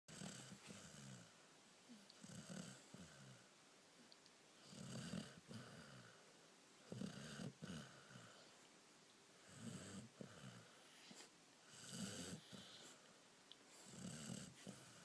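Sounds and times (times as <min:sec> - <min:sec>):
person snoring: 0:11.7 - 0:12.8, 0:13.8 - 0:15.0.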